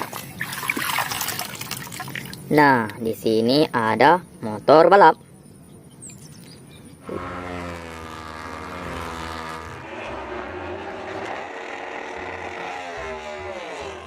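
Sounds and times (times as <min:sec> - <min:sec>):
racing motorcycle engine: 0:07.0 - 0:14.0.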